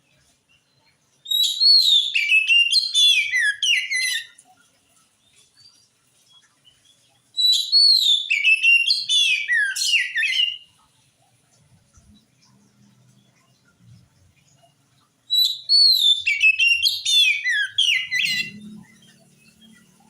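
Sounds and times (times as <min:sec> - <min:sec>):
bird singing whistles and trills: 0:01.2 - 0:04.4, 0:06.7 - 0:10.8, 0:15.2 - 0:20.0.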